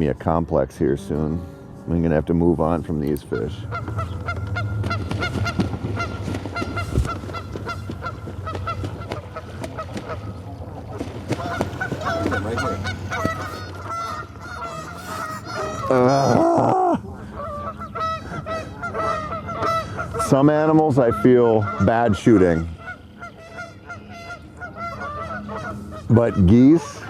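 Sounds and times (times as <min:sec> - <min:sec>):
steady low rumble: 0:00.0 - 0:15.8
geese honking: 0:00.8 - 0:27.0.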